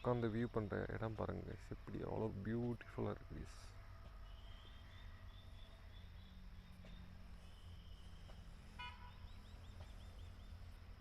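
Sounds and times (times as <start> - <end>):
distant horn toot: 8.6 - 9.4.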